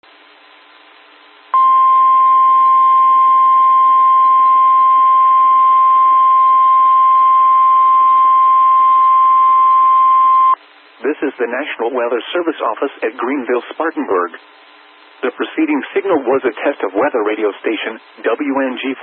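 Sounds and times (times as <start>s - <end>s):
steady loud alarm tone: 1.6s - 10.6s
radio hiss: 10.8s - 19.0s.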